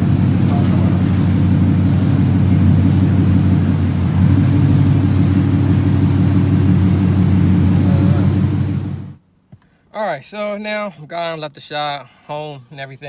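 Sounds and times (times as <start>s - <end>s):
loud low car exhaust: 0.0s - 9.2s.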